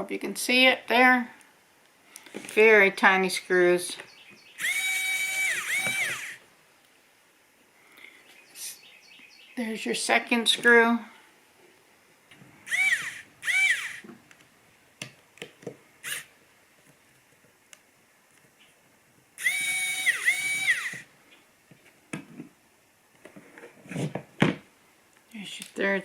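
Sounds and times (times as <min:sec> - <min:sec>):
electric screwdriver motor whirring: 0:04.6 - 0:06.4, 0:12.7 - 0:14.1, 0:16.0 - 0:16.3, 0:19.4 - 0:21.1.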